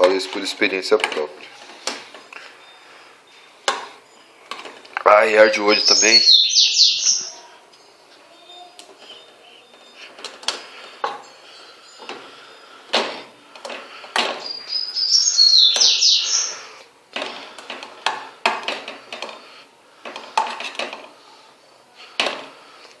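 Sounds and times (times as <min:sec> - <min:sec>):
birds chirping: 0:00.0 - 0:17.6
loud high bird call: 0:14.4 - 0:16.8.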